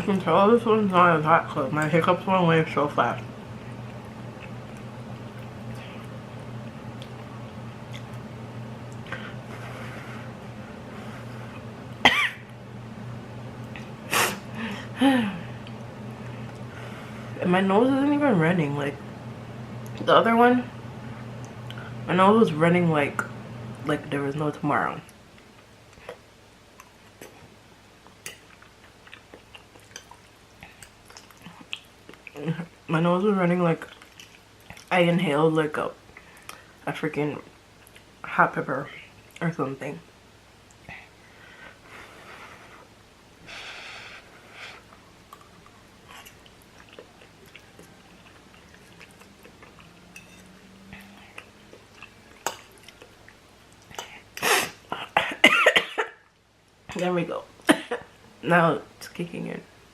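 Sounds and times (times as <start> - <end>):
woman coughing: 12.0 - 12.4, 54.4 - 56.2, 57.7 - 58.1
person chewing noodles: 28.0 - 32.4, 33.8 - 34.9, 44.4 - 54.3.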